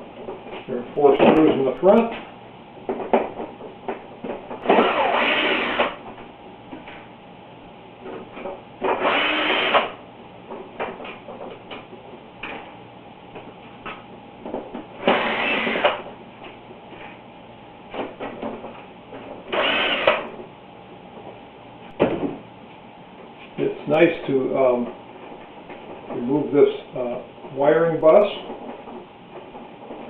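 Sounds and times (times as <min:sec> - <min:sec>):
cordless power screwdriver running: 0:19.5 - 0:20.3.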